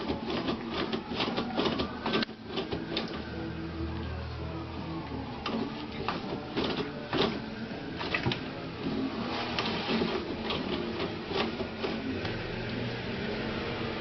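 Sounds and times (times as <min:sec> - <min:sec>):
toilet paper rustling: 0:00.0 - 0:03.4, 0:04.1 - 0:12.3
toilet roll rattling: 0:05.4 - 0:12.6.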